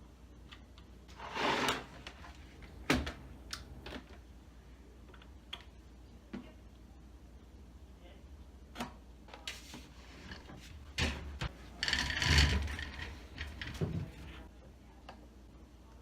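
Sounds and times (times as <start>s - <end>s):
scraping rub: 1.1s - 2.2s.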